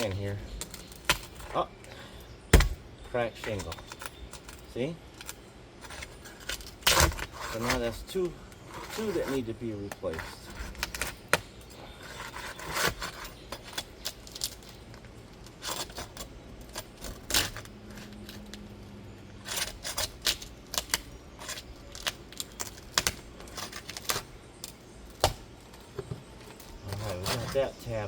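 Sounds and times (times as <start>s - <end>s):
metal tool scraping roof shingles: 5.8s - 14.8s, 15.5s - 18.5s, 19.4s - 24.3s, 26.8s - 28.0s.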